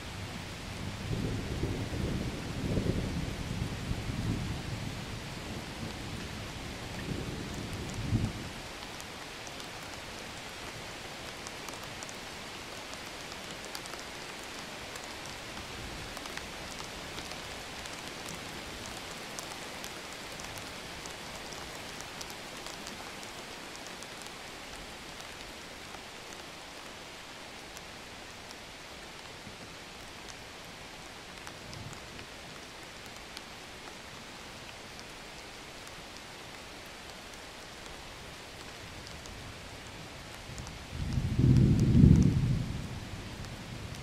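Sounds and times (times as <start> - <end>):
steady rain falling: 0.0 - 44.0
low rumble of thunder: 0.1 - 8.6, 40.8 - 44.0.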